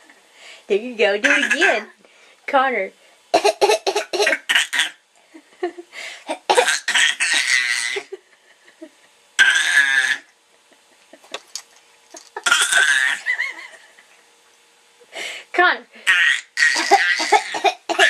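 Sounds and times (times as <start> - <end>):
child fake-coughing: 1.2 - 1.9, 3.4 - 5.0, 6.3 - 8.0, 9.4 - 10.2, 12.4 - 13.2, 16.1 - 18.0.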